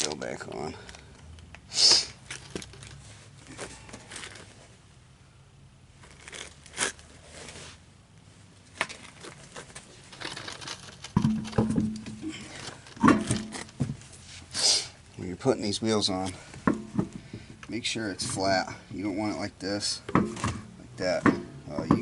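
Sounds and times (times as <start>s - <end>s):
car wheel scraping and knocking: 11.0s - 12.3s, 13.0s - 14.2s, 16.3s - 18.7s, 20.0s - 22.0s.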